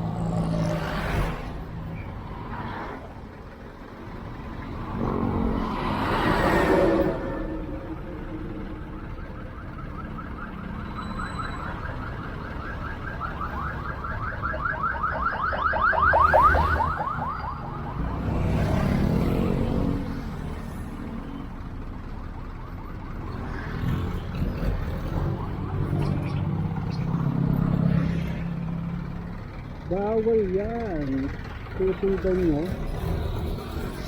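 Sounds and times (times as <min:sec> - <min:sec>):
traffic engine rumble: 0:00.0 - 0:34.0
electronic siren yelping: 0:08.9 - 0:18.8, 0:22.6 - 0:27.2.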